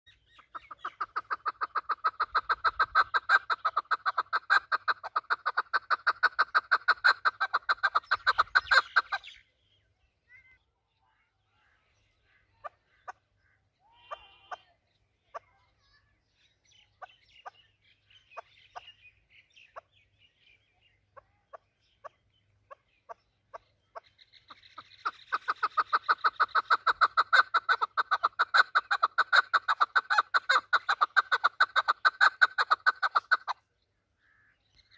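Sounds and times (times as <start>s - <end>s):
partridge calling: 0.1s - 34.9s.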